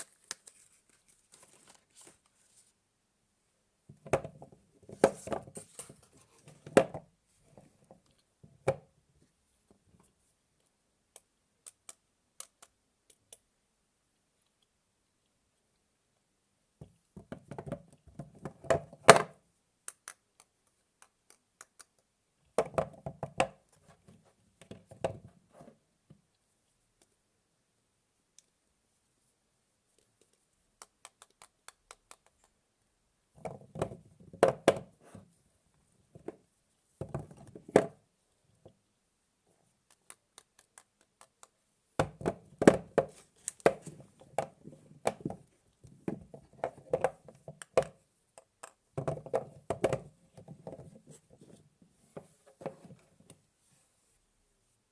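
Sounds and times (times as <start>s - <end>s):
soap wrapper crackling: 0.0s - 2.1s.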